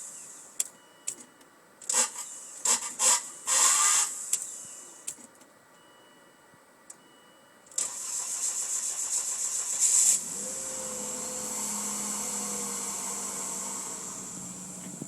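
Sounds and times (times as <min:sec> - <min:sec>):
car engine cranking: 0:01.8 - 0:04.5, 0:07.7 - 0:15.0
car engine idling: 0:07.8 - 0:15.0.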